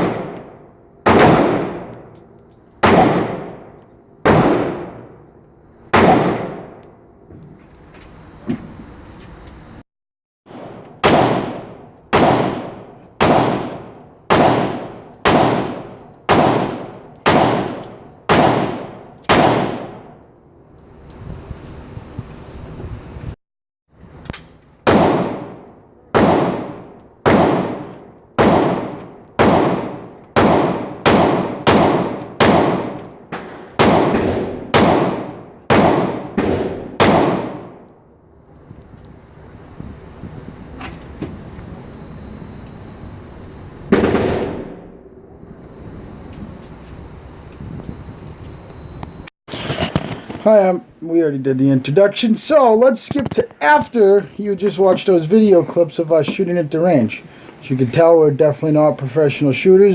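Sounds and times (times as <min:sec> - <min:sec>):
pistol shots: 0:00.0 - 0:01.9, 0:02.8 - 0:05.0, 0:05.9 - 0:06.8, 0:10.5 - 0:20.1, 0:24.8 - 0:37.8, 0:43.9 - 0:44.9.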